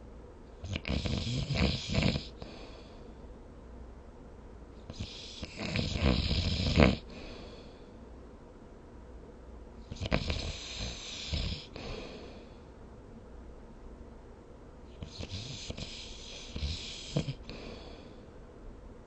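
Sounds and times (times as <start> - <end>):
person snoring: 0.6 - 2.8, 4.9 - 7.7, 9.9 - 12.5, 15.0 - 18.1.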